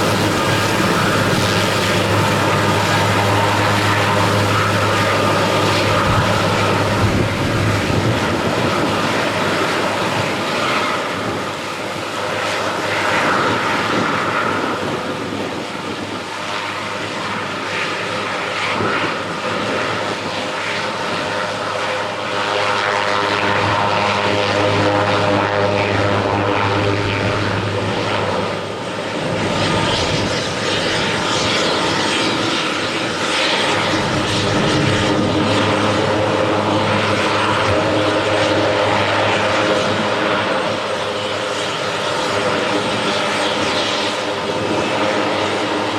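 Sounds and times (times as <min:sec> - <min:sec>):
helicopter engines and rotors: 0:00.0 - 0:45.9.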